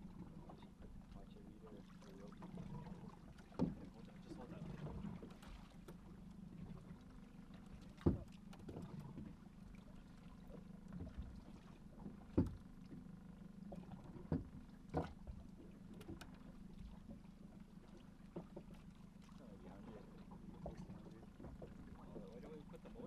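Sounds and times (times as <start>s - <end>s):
boat engine idling: 0.0s - 23.0s.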